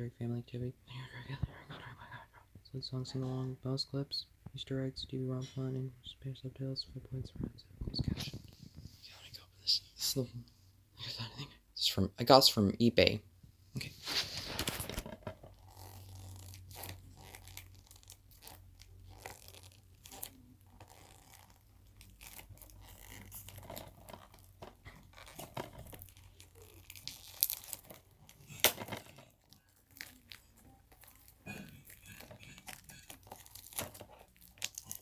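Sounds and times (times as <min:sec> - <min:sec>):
packaging rustling and crinkling: 0:14.0 - 0:35.0
package tearing: 0:14.4 - 0:35.0.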